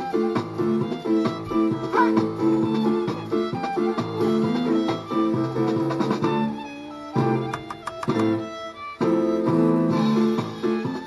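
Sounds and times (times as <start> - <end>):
fiddle melody: 0.0 - 11.0
guitar playing: 0.0 - 11.0.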